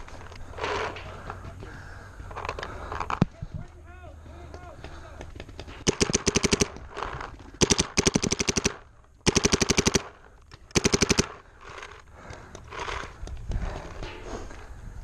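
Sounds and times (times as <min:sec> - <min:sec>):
paintball marker rapid shots: 0:04.8 - 0:11.4.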